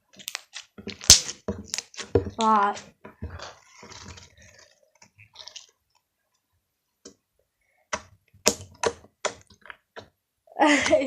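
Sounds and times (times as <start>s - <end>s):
wet slime squishing: 0.0s - 6.4s.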